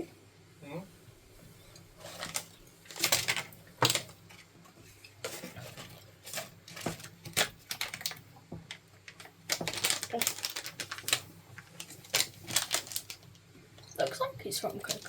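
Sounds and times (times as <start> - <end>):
packaging clicking and rustling: 2.0 - 4.4, 5.2 - 13.5, 14.6 - 15.0.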